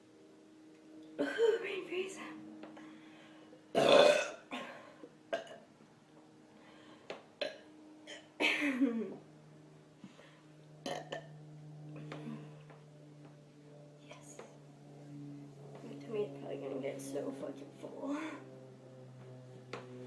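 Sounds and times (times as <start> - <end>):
woman burping: 3.7 - 5.7, 7.4 - 9.2, 10.8 - 11.3.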